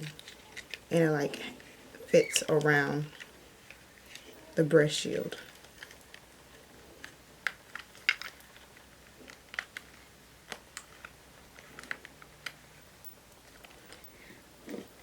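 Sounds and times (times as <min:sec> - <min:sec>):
plastic parts clicking: 0:00.1 - 0:00.9, 0:07.0 - 0:12.6.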